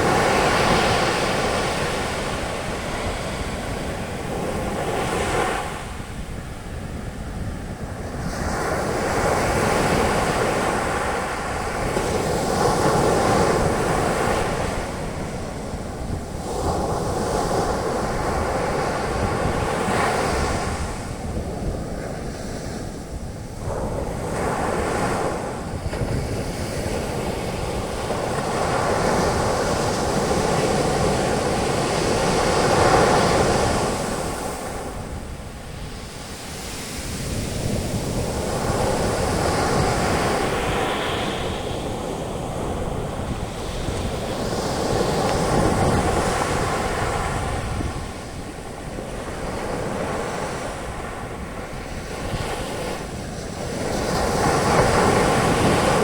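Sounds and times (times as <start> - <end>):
wind buffeting microphone: 0.0 - 56.0
ocean waves breaking: 23.6 - 56.0.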